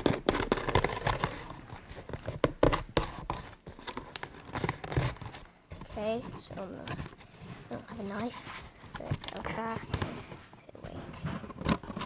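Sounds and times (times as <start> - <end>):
cardboard tearing: 0.0 - 10.3, 10.9 - 12.0
cardboard rustling: 0.0 - 12.0
knocks and scrapes: 0.0 - 12.0.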